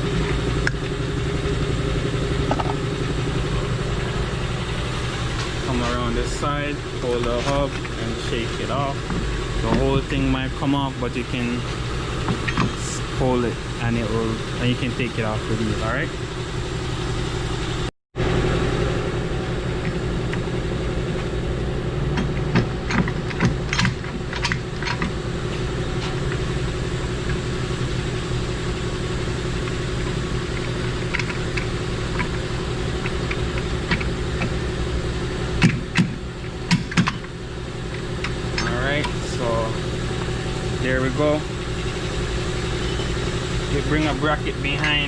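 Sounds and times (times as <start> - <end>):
motor humming: 0.0 - 45.0
metallic clicks and knocks: 22.1 - 25.1, 35.6 - 37.3.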